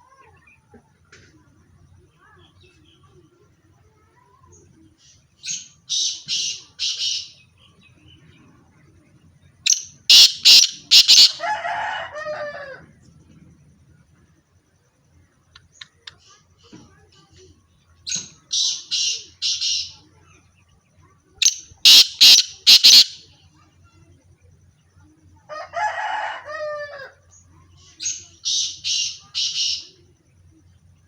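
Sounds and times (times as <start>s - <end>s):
bird harsh grating calls: 9.7s - 11.4s, 21.4s - 23.2s.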